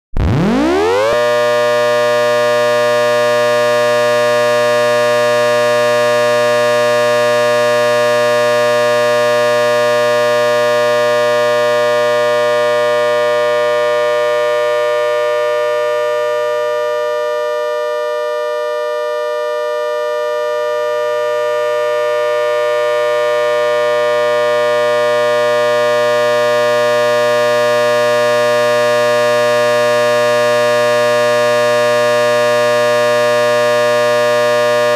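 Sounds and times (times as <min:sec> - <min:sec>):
siren multi-tone chord: 0:00.1 - 0:10.7.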